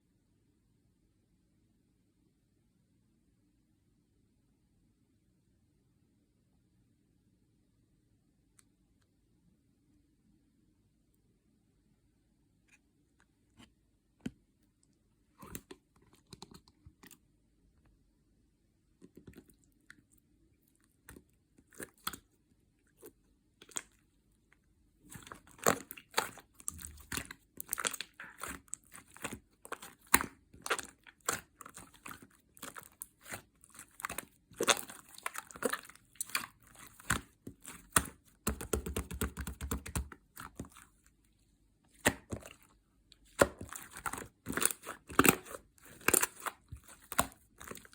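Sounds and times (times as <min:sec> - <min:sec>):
slime crackling and popping: 0:25.1 - 0:40.8, 0:43.2 - 0:47.9.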